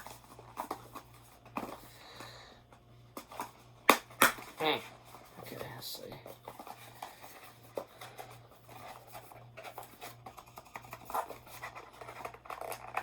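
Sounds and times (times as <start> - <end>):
cardboard packaging being handled: 3.2 - 13.0.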